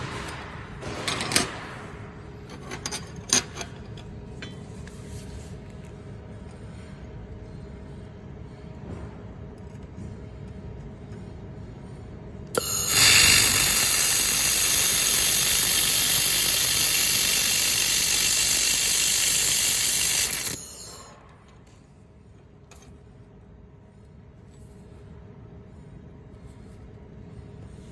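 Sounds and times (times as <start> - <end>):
welding hiss: 12.6 - 21.1.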